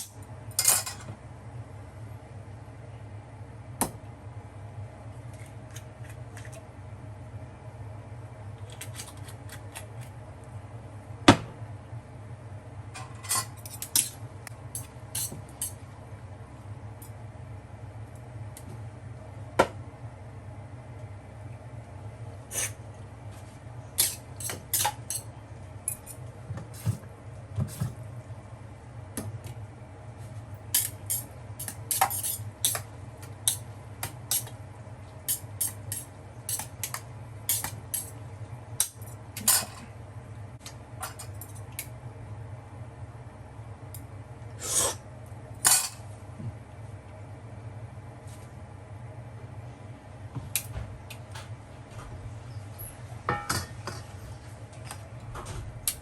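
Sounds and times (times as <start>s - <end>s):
steady low hum: 0.0s - 56.0s
metal utensils clinking on dishes: 0.6s - 1.1s, 45.7s - 46.0s.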